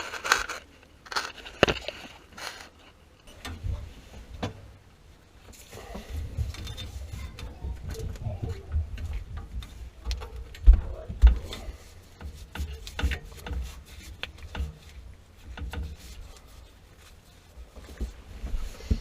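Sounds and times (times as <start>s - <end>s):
knocks clicks and rubbing from tools: 6.3s - 16.5s.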